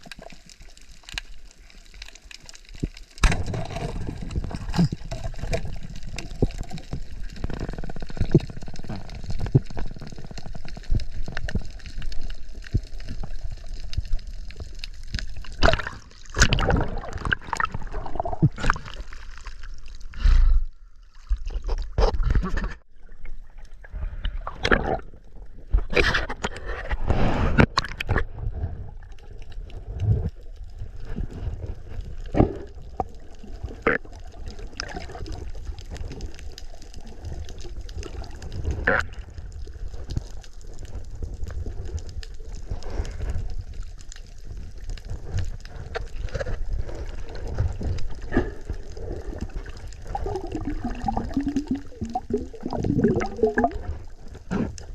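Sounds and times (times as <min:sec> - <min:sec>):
water sloshing and gurgling: 0:00.0 - 0:54.9.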